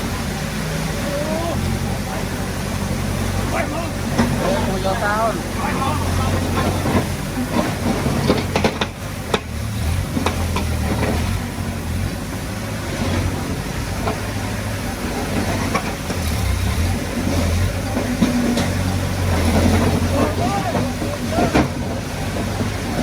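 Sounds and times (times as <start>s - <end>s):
bulldozer diesel engine running: 0.0s - 23.0s
metal clanks and knocks: 6.3s - 11.3s.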